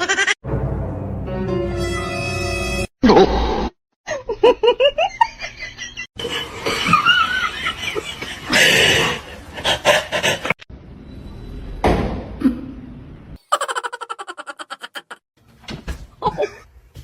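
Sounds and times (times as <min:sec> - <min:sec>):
people laughing: 0:04.4 - 0:10.6, 0:13.5 - 0:15.2.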